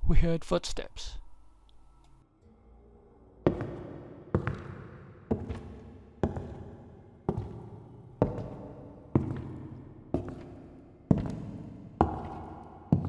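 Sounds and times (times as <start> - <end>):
slow heavy footsteps: 3.4 - 13.0.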